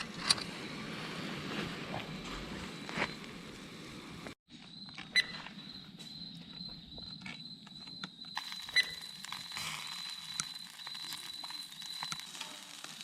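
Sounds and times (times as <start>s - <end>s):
insect trilling: 5.1s - 13.0s.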